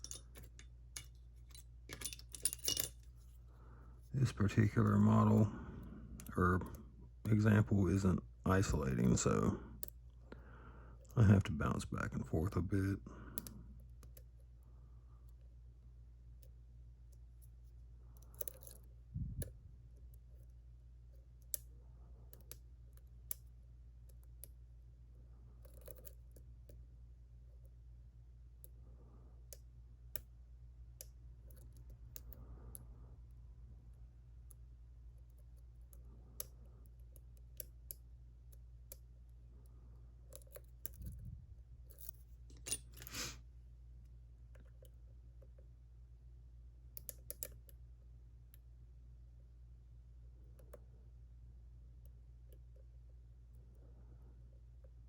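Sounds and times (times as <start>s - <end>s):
lock picks clicking and scraping: 0.0s - 3.2s, 17.4s - 18.9s, 25.6s - 26.8s, 41.8s - 43.2s
steady low hum: 0.0s - 55.0s.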